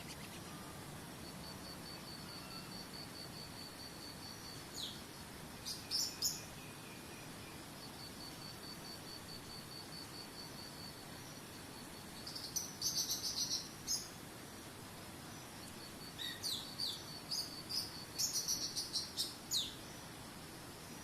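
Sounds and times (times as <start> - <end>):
high insect trill: 0.0 - 21.0
songbird chirping and whistling: 5.6 - 7.3, 16.2 - 19.8.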